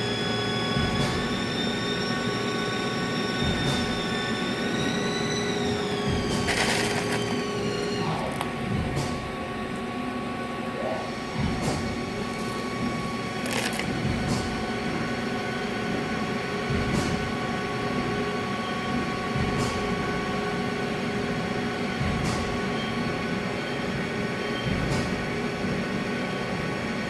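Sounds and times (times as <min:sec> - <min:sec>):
machining centre whine: 0:00.0 - 0:27.0.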